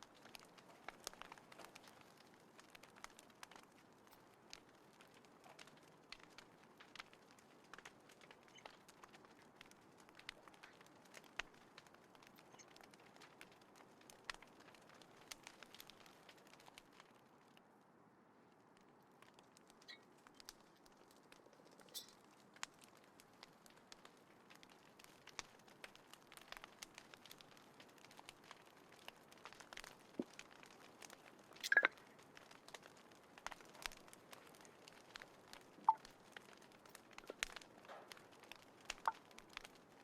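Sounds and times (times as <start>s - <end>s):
wood fire crackling: 0.0s - 40.0s.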